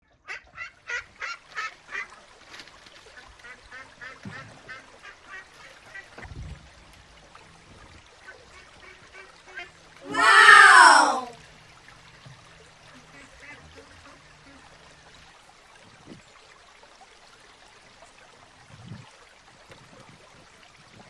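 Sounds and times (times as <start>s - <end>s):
long call falling in pitch: 10.1s - 11.3s.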